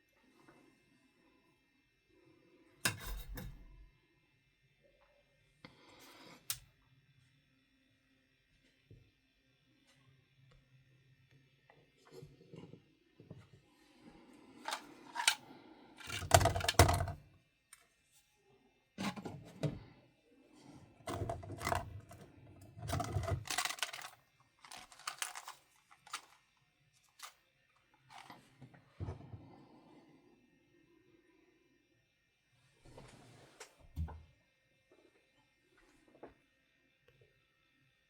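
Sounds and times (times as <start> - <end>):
plastic pots clicking and rattling: 14.7 - 15.4, 16.0 - 17.2, 21.1 - 26.4.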